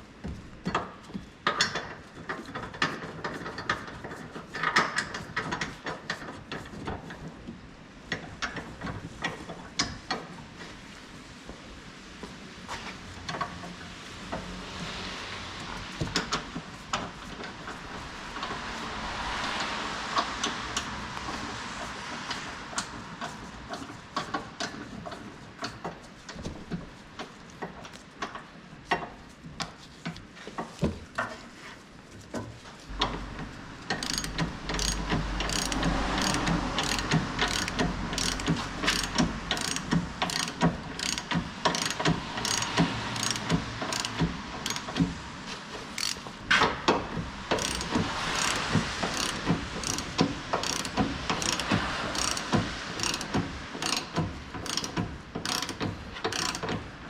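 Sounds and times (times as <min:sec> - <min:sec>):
ratchet wrench clicking: 0:33.8 - 0:45.1, 0:45.9 - 0:46.4, 0:47.5 - 0:56.8.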